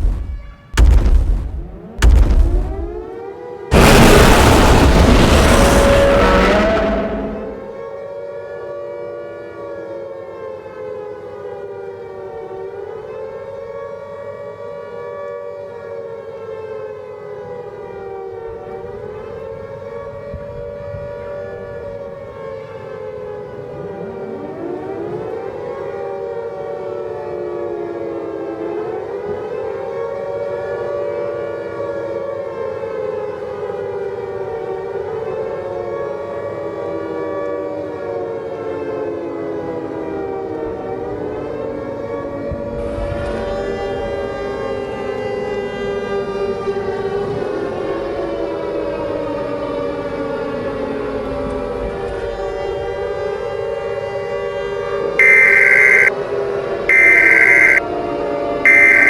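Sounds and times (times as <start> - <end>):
civil defense siren wailing: 55.2 - 56.1, 56.9 - 57.8, 58.7 - 59.0.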